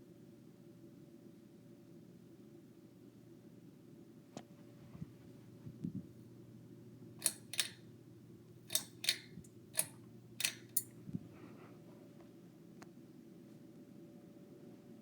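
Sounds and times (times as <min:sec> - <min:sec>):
ceiling fan hum: 0:00.0 - 0:15.0
sharp clicks: 0:07.2 - 0:07.8, 0:08.7 - 0:10.9.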